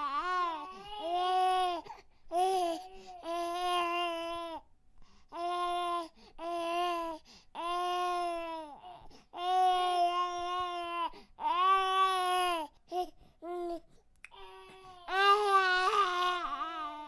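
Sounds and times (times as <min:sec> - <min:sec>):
baby crying: 0:14.3 - 0:17.0.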